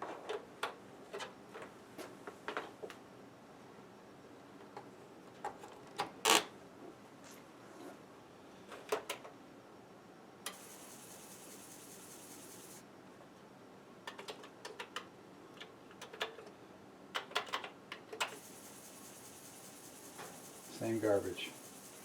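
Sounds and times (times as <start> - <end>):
faint high hiss: 10.4 - 13.0, 18.3 - 22.0.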